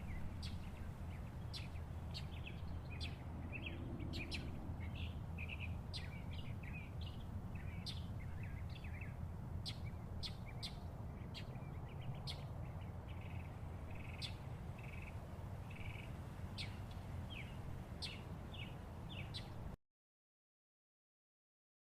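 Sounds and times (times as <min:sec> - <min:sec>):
steady low rumble: 0:00.0 - 0:06.4
songbirds chirping: 0:00.0 - 0:19.8.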